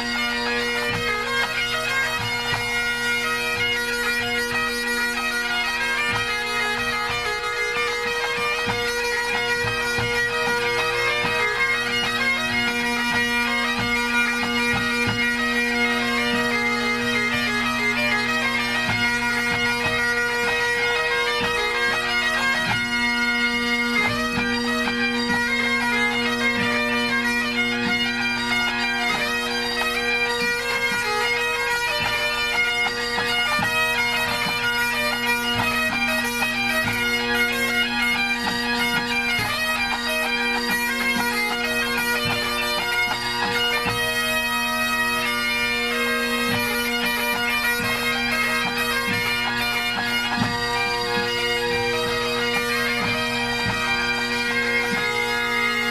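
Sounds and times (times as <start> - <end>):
bagpipes playing: 0.0 - 55.9.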